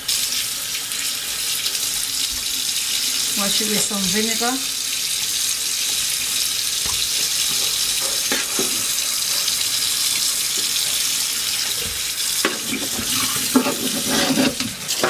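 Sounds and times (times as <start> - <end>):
tap running into sink: 6.7 - 15.0.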